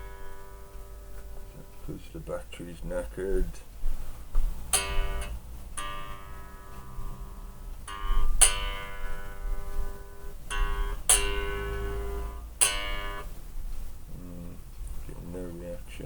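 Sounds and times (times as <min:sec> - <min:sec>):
bass guitar strings plucked: 0:00.0 - 0:03.6, 0:04.4 - 0:13.4.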